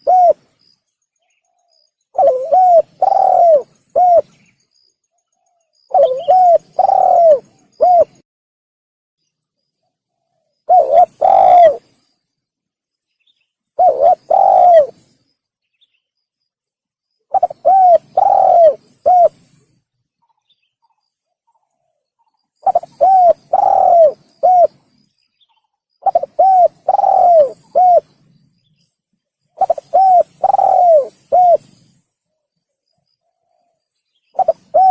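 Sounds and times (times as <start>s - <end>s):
dove cooing: 0.0s - 0.5s, 1.6s - 4.4s, 5.8s - 8.2s, 10.7s - 11.9s, 13.8s - 15.1s, 17.3s - 19.6s, 22.6s - 24.9s, 26.0s - 28.2s, 29.6s - 32.0s, 34.4s - 34.9s.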